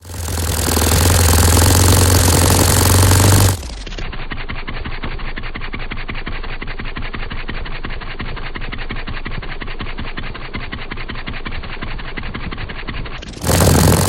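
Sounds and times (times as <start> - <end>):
model aircraft engine running: 0.0 - 14.0.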